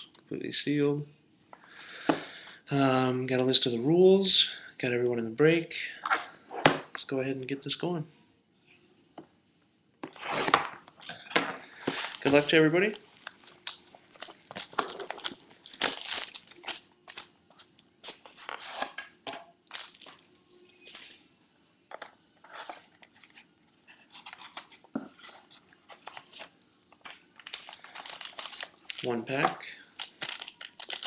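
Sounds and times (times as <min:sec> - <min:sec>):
plastic wrap crinkling: 0:12.0 - 0:18.6, 0:19.6 - 0:21.2, 0:26.0 - 0:31.0.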